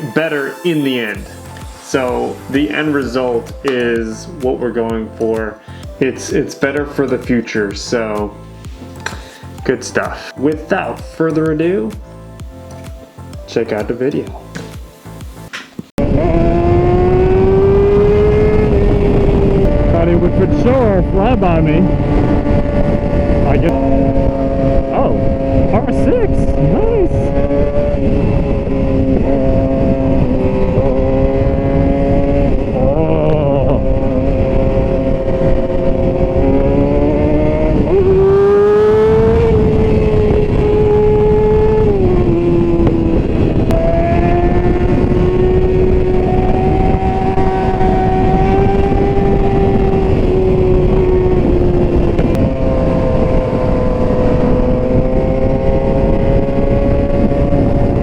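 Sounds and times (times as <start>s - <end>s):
motorcycle engine revving: 0.1s - 58.0s
wind rush: 15.8s - 58.0s.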